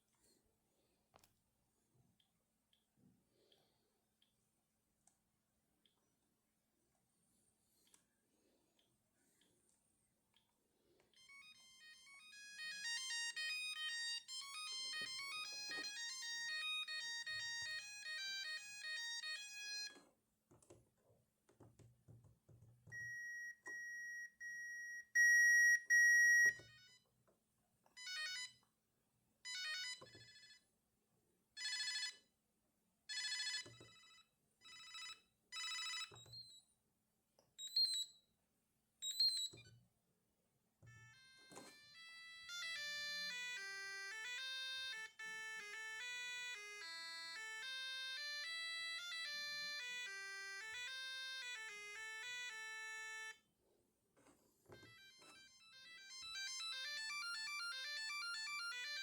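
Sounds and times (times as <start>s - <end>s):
fast beeping ringtone melody: 11.2s - 19.9s, 22.9s - 27.0s, 40.9s - 53.4s, 54.8s - 59.0s.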